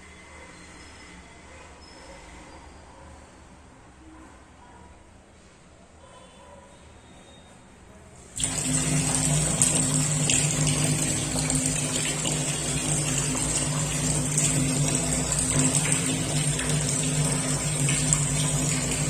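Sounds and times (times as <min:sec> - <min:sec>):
tap water running into sink: 0:08.4 - 0:19.0.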